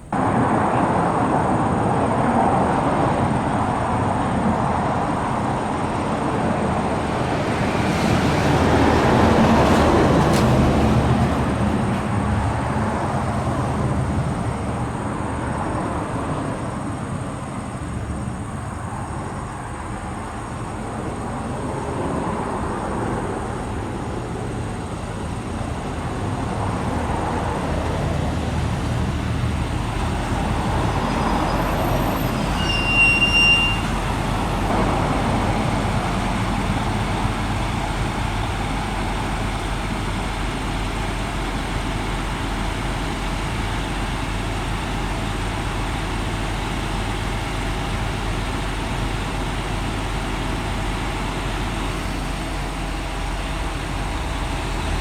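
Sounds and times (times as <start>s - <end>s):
diesel railcar engine and rolling: 0.0s - 55.0s.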